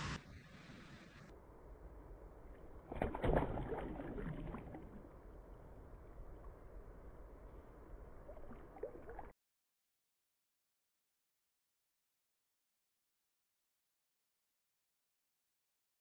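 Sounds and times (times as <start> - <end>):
water splashing around canoe: 2.9 - 5.1.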